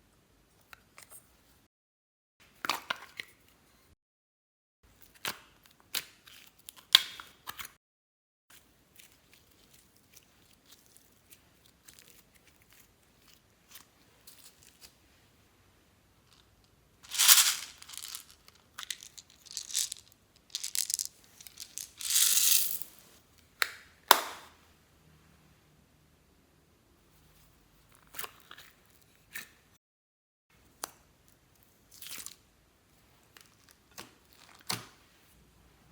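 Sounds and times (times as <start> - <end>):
crinkling and crushing: 17.0 - 23.1.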